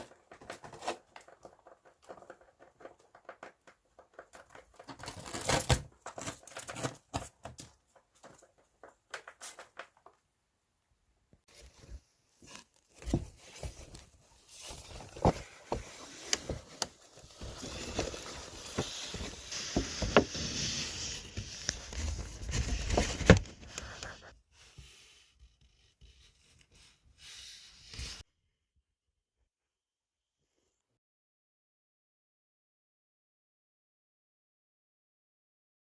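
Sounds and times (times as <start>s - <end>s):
paper bag rustling and scratching: 0.0s - 7.6s, 12.4s - 24.3s.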